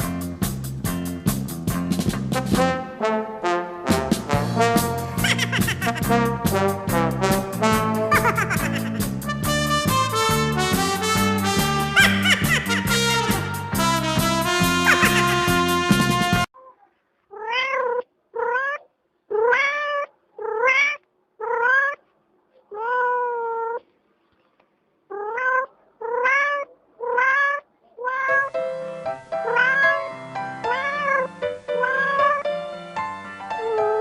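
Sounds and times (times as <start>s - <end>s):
music: 0.0s - 16.5s, 28.3s - 34.0s
cat meowing: 16.6s - 22.0s, 22.7s - 23.8s, 25.1s - 28.5s, 29.4s - 32.5s, 33.6s - 34.0s.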